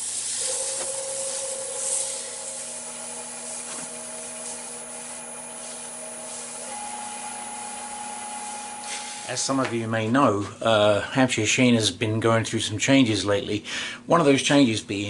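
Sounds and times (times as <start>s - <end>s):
sanding hiss on spinning wood: 0.0s - 9.6s
wood lathe hum: 0.0s - 9.7s.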